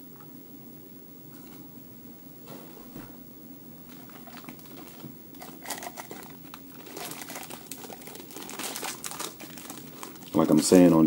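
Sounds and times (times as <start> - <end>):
packaging crinkling and rustling: 3.9 - 11.0.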